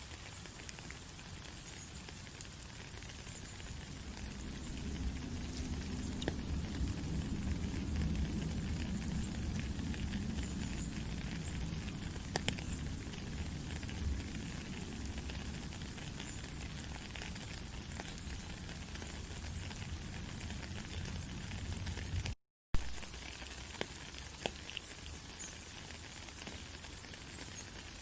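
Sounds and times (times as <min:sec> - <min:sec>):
steady rain hiss: 0:00.0 - 0:28.0
low rumble: 0:03.7 - 0:18.4.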